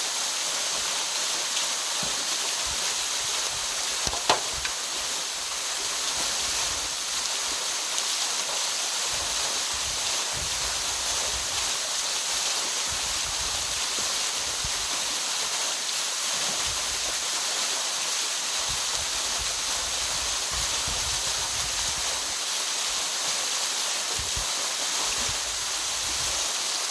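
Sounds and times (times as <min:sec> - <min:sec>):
water rushing: 0:02.6 - 0:06.2.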